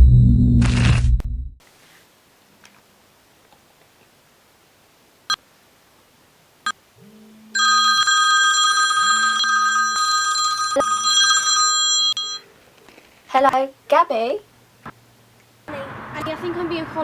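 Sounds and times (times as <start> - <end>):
low hum: 0.0 - 1.6
electronic telephone ringtone: 7.6 - 12.5.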